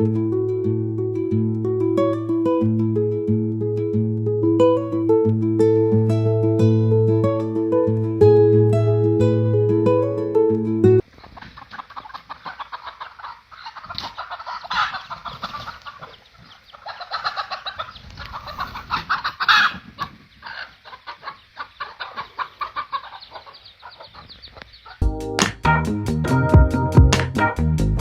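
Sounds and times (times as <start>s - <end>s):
chickens clucking: 11.0s - 25.2s.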